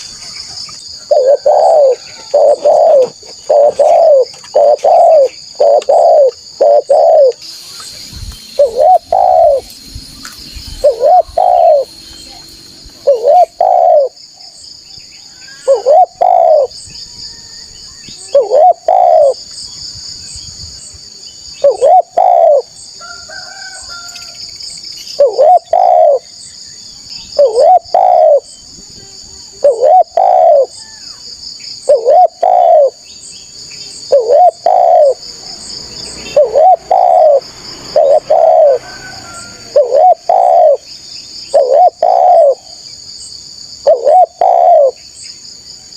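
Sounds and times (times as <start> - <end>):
dove cooing: 1.0 - 7.4, 8.6 - 9.7, 10.8 - 11.9, 13.0 - 14.2, 15.6 - 16.7, 18.2 - 19.4, 21.6 - 22.7, 25.2 - 26.3, 27.4 - 30.8, 31.8 - 33.0, 34.0 - 40.9, 41.5 - 42.8, 43.8 - 45.0
high insect buzz: 1.2 - 14.4.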